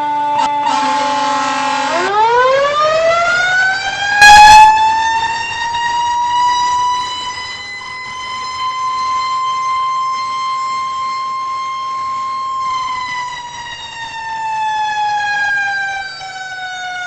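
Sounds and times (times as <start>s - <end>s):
air horn blasts: 0.0s - 2.3s, 4.2s - 4.9s
fire engine siren wailing: 0.0s - 17.0s.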